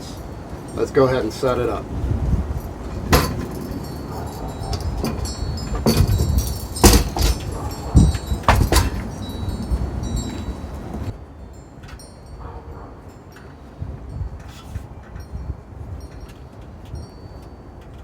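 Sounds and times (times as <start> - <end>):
metal frame clanking and rattling: 0.0 - 11.2
high metallic ringing: 0.0 - 14.4
sharp knocks: 3.1 - 10.5.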